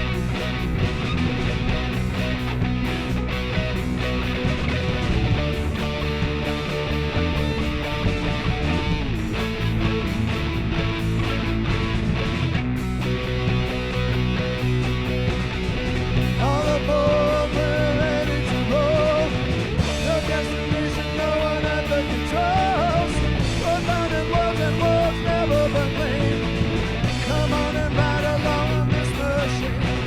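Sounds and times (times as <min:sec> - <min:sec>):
electric guitar lead melody: 0:00.0 - 0:30.0
punk rock band playing: 0:00.0 - 0:30.0.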